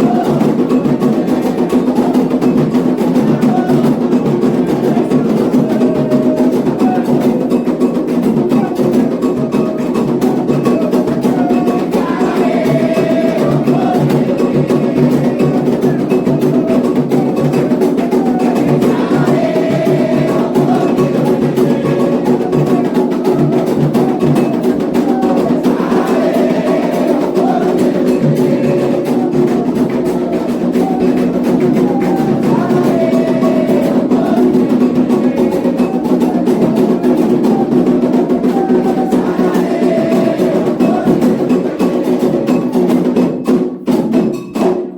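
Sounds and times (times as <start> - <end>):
voices singing: 0.0 - 43.9
hand drums: 0.0 - 44.9
metal bell beating rhythm: 44.2 - 44.7.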